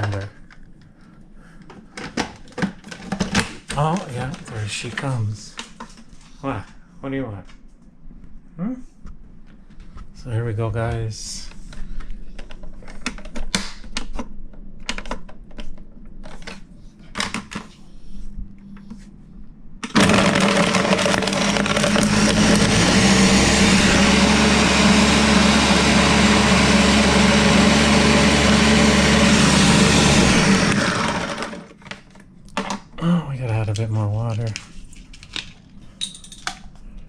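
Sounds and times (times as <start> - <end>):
blender blending ice: 19.8 - 31.8.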